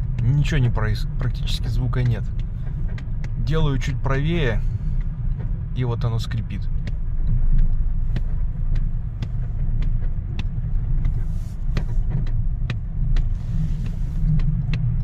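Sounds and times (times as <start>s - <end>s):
car rumble from inside cabin: 0.0s - 15.0s
rubbery suspension creaks: 6.6s - 15.0s.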